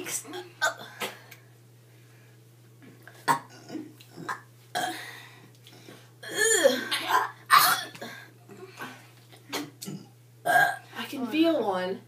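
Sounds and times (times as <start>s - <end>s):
girls burping: 6.2s - 8.0s, 9.8s - 10.8s.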